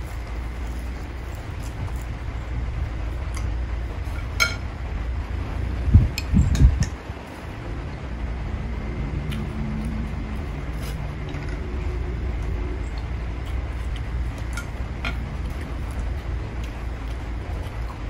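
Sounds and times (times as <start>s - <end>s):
low rumble: 0.0s - 18.0s
cutlery clinking against a bowl: 4.2s - 4.6s.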